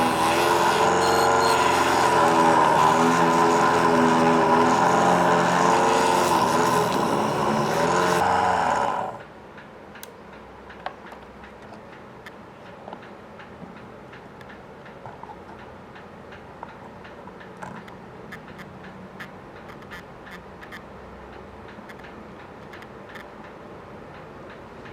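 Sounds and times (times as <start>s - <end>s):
small electric motor whining: 0.0s - 9.2s
faint clicks and taps: 9.6s - 24.9s.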